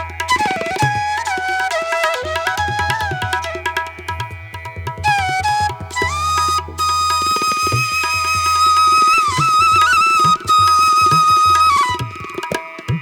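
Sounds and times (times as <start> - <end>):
tabla rhythm: 0.0 - 13.0
flute holding long note: 5.1 - 12.4.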